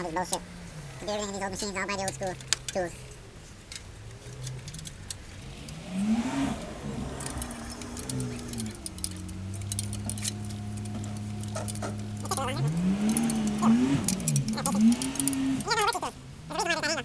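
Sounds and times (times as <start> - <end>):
wrench clinking on metal bolts: 3.7 - 5.8, 6.6 - 16.1.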